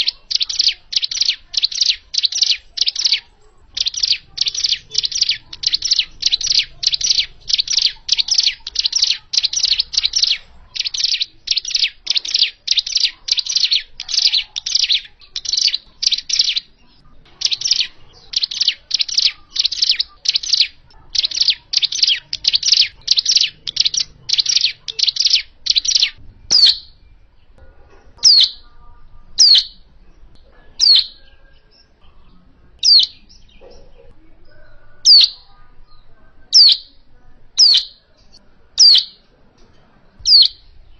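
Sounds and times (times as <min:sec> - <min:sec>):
bird chirping rapidly: 0:00.0 - 0:27.6, 0:28.2 - 0:28.7, 0:29.3 - 0:29.9, 0:30.8 - 0:32.2, 0:32.8 - 0:39.3, 0:40.2 - 0:40.9
sharp downward-sweeping bird calls: 0:03.8 - 0:16.7, 0:17.4 - 0:27.0, 0:28.2 - 0:28.6, 0:37.6 - 0:38.0, 0:38.8 - 0:39.2.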